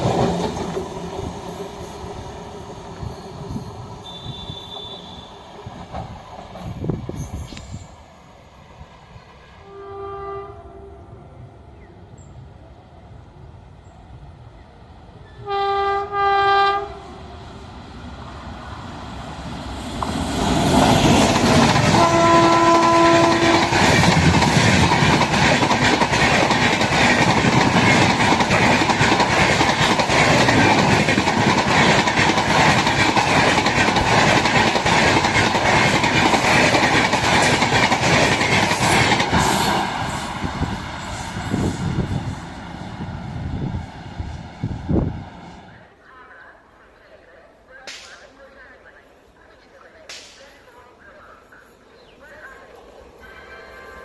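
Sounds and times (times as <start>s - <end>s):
train passing with wheel clatter: 0.0s - 46.0s, 49.5s - 54.0s
train horn blasts: 4.0s - 5.6s, 9.6s - 11.4s, 15.4s - 17.4s, 21.8s - 23.8s, 53.2s - 54.0s.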